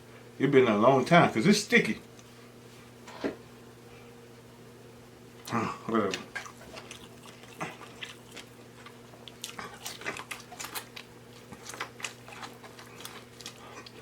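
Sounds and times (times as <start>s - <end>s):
steady low hum: 0.0s - 14.0s
chewing and wet lip-smacking: 6.1s - 14.0s.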